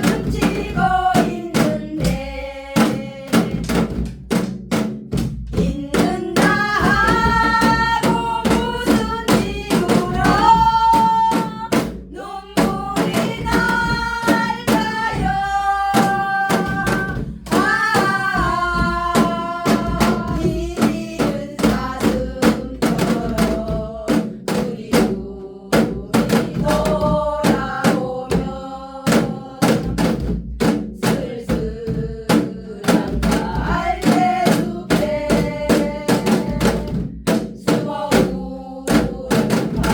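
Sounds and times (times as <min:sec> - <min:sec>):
hourglass drum strokes: 0:05.6 - 0:25.2
person singing slow song: 0:05.7 - 0:30.0.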